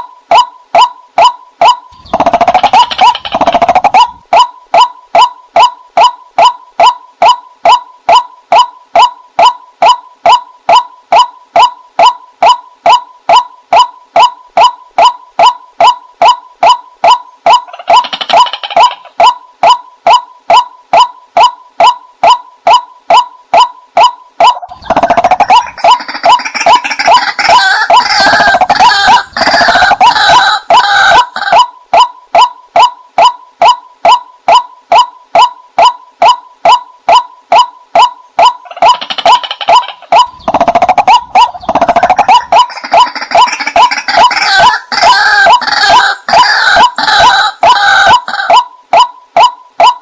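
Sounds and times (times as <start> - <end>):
rough overlapping bird calls: 0.0 - 50.0
rapid chatter of bird calls: 1.9 - 4.2, 17.7 - 19.2, 24.7 - 30.1, 38.6 - 44.6
waterhen kwak calls: 23.6 - 34.2, 37.1 - 50.0.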